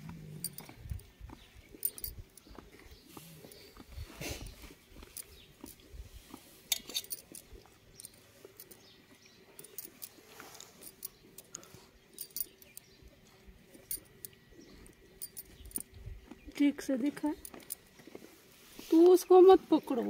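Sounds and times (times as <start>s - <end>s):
light clinks: 0.2s - 3.8s, 5.0s - 5.9s, 6.7s - 16.2s, 17.2s - 18.1s.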